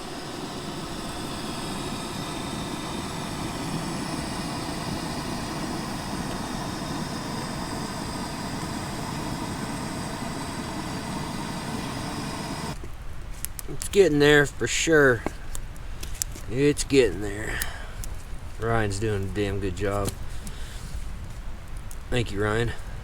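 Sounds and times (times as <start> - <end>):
onions sizzling in a pot: 0.0 - 12.8.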